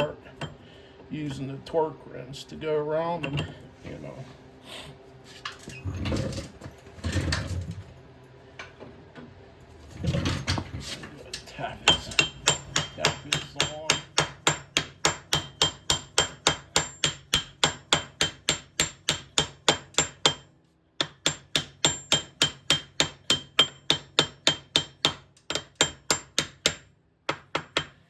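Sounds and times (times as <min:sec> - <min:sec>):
hammer tapping on steel: 0:11.8 - 0:28.0.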